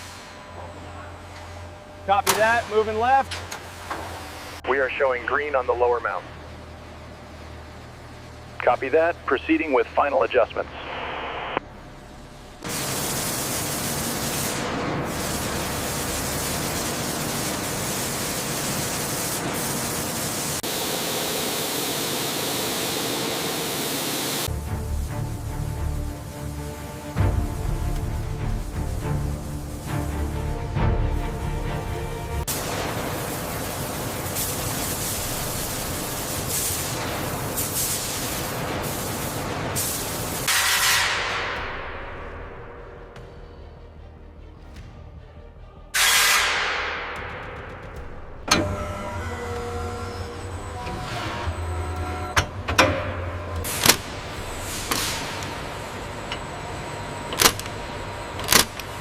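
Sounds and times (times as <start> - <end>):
loud rushing hiss: 12.6 - 43.8, 45.9 - 59.0
steady rushing hiss: 22.0 - 43.1.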